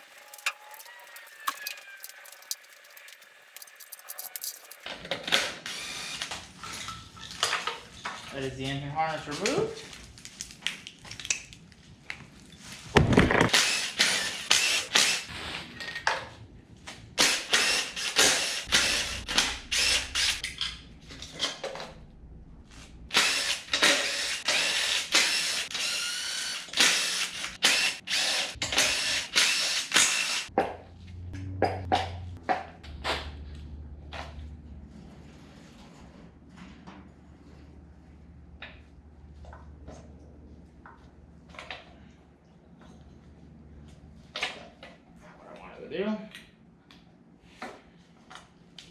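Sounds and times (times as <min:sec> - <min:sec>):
ratcheting: 0:00.0 - 0:04.9.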